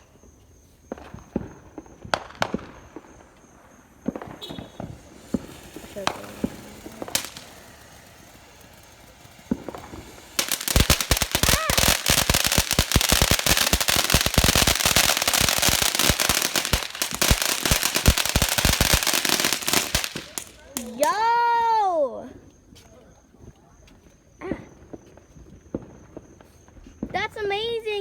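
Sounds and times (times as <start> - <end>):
firecrackers banging: 0.0 - 22.2.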